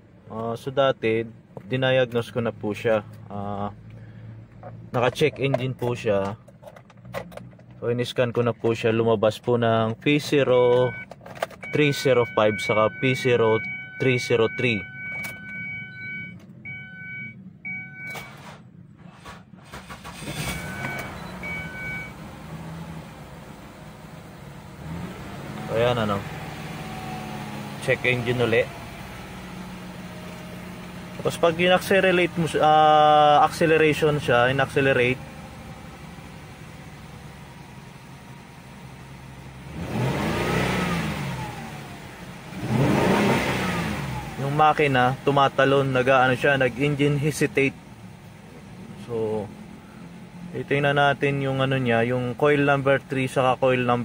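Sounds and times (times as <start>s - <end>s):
car engine idling and revving: 0.0s - 54.0s
dashboard warning chime beeping: 10.7s - 18.4s, 20.4s - 22.2s.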